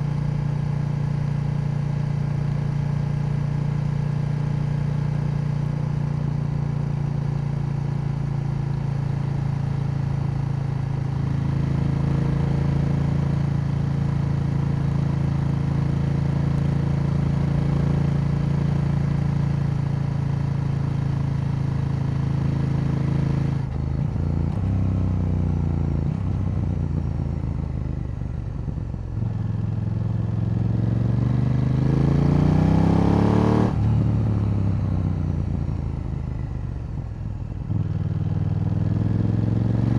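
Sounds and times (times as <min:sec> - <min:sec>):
motorcycle engine revving: 0:29.2 - 0:36.4, 0:37.7 - 0:39.9.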